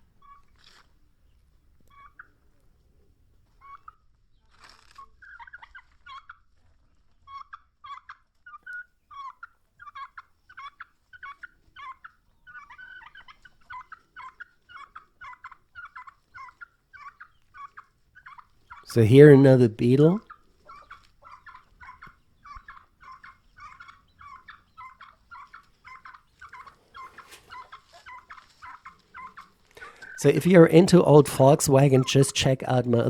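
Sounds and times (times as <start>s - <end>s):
poultry chattering: 8.6s - 33.0s.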